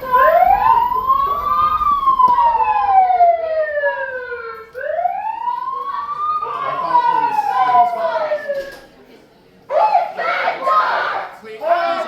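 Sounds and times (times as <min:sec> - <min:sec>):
emergency vehicle siren wailing: 0:00.0 - 0:09.0.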